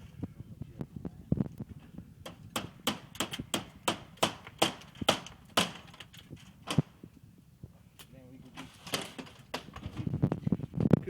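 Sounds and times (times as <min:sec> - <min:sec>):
sharp knocks: 0:02.2 - 0:06.0.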